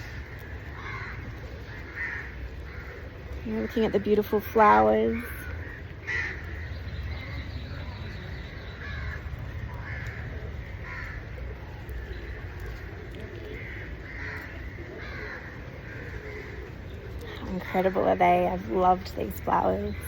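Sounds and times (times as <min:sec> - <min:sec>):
crows cawing: 0:00.0 - 0:07.3, 0:08.7 - 0:17.4
low background rumble: 0:00.0 - 0:20.0.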